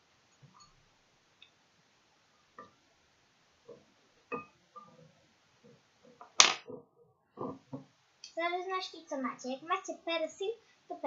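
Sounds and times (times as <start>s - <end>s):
faint knocks and clinks of utensils: 3.7s - 7.9s.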